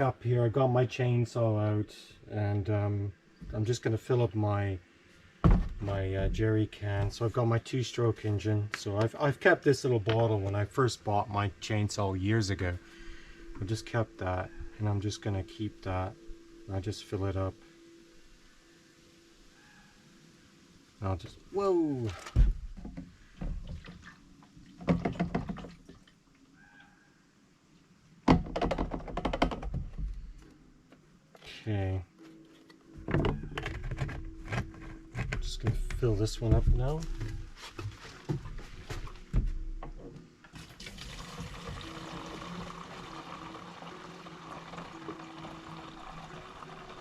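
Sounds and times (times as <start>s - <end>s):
fuel glugging from container: 40.6s - 47.0s.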